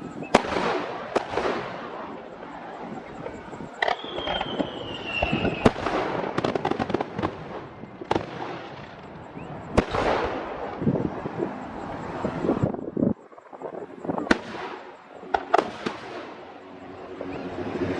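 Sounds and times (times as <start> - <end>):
firework crackling: 0.0 - 12.7, 13.4 - 17.9
firework whistle: 0.0 - 12.7
firework shells bursting: 3.7 - 9.1.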